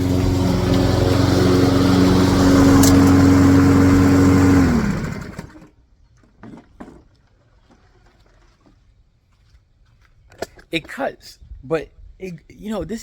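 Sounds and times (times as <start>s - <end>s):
lawnmower engine running: 0.0s - 5.7s.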